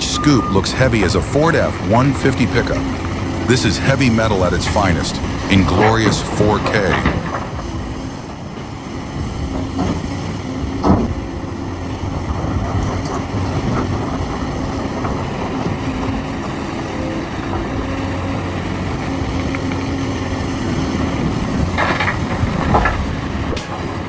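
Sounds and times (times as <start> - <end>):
heavy diesel machinery running: 0.0 - 24.0.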